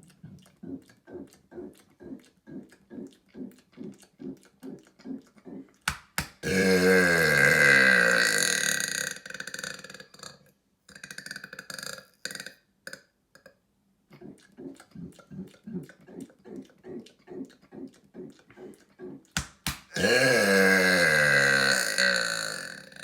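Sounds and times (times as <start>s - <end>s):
rhythmic throat sounds: 0.0s - 23.0s
man burping: 6.4s - 13.0s, 19.9s - 23.0s.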